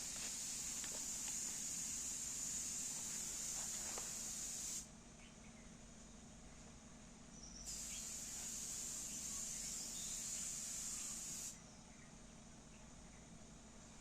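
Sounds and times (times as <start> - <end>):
high-pitched hiss: 0.0 - 4.9, 7.7 - 11.6.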